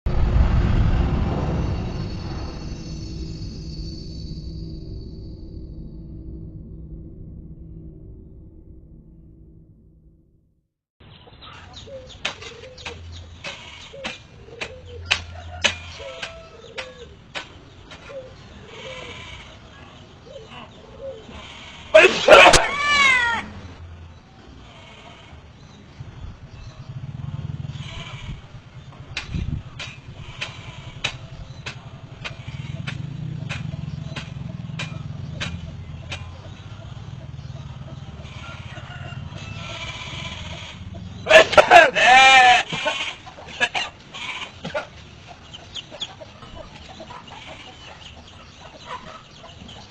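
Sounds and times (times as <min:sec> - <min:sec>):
engine running: 0:00.1 - 0:10.5, 0:25.8 - 0:44.2.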